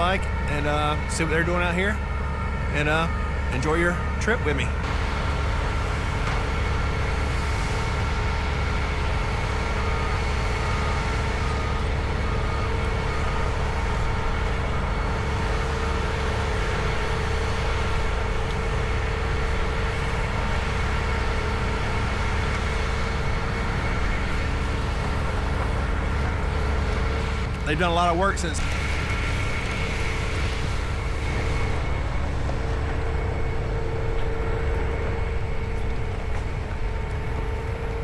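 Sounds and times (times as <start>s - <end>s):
heavy machinery rumbling: 0.0s - 38.0s
machinery whining tones: 0.0s - 38.0s.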